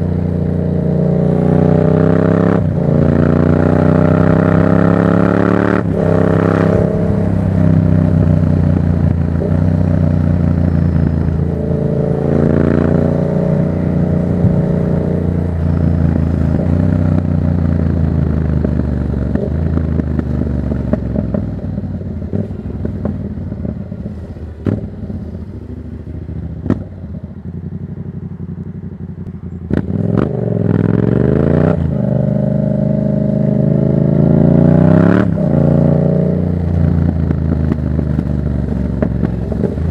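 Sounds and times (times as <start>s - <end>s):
motorcycle engine revving: 0.0s - 39.9s
exhaust pops: 22.3s - 25.2s, 26.6s - 27.0s, 37.0s - 39.9s.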